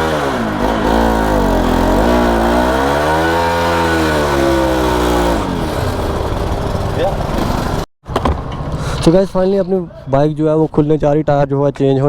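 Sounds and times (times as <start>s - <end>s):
motorcycle engine revving: 0.0s - 7.9s.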